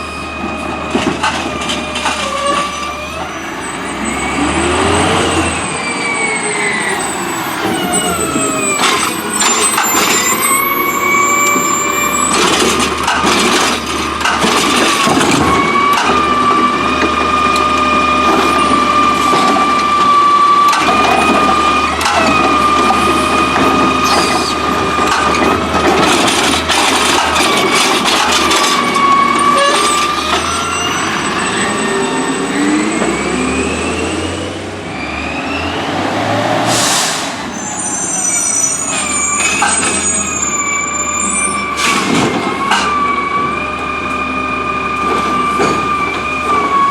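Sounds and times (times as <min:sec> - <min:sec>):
garbage truck whine: 0:00.0 - 0:46.9
clattering and bangs: 0:12.2 - 0:16.4, 0:20.7 - 0:30.5.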